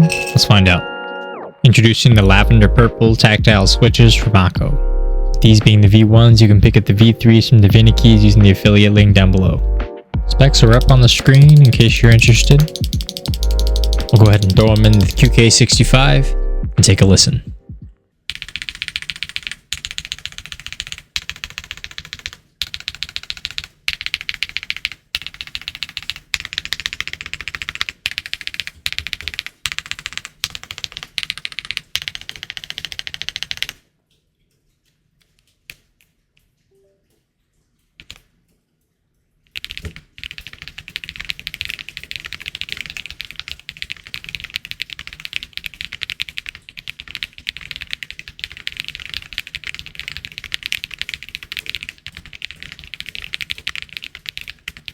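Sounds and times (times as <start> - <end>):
mechanical keyboard typing: 10.4 - 15.7, 18.3 - 33.8, 38.0 - 38.3, 39.5 - 54.9.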